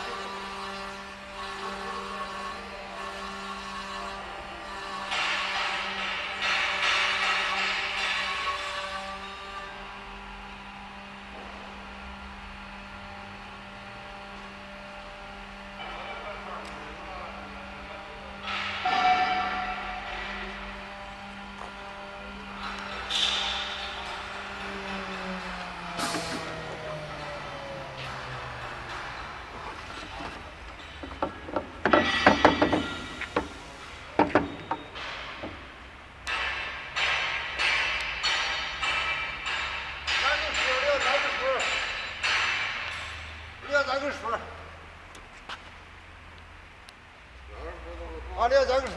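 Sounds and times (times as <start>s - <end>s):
steady electric hum: 0.0s - 48.9s
wood knocking on a machine: 28.1s - 35.7s.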